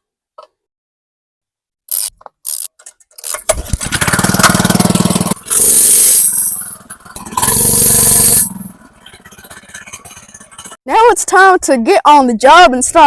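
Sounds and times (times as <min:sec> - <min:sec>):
starter clicks: 0:01.9 - 0:04.6
small engine running and revving: 0:01.9 - 0:10.8.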